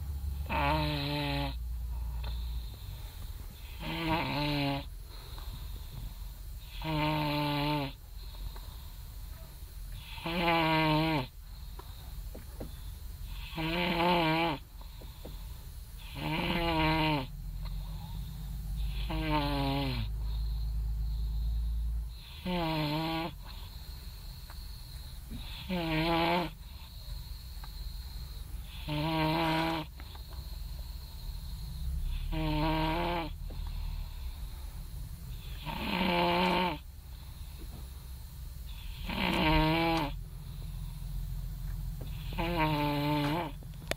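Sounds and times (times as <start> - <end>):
steady low hum: 0.0 - 43.9
person snoring loudly: 0.4 - 1.6, 3.6 - 4.9, 6.6 - 8.0, 10.0 - 11.3, 13.3 - 14.6, 16.0 - 17.3, 18.8 - 20.1, 22.2 - 23.4, 25.3 - 26.6, 28.7 - 29.9, 32.0 - 34.3, 35.4 - 36.8, 38.7 - 40.2, 42.1 - 43.6.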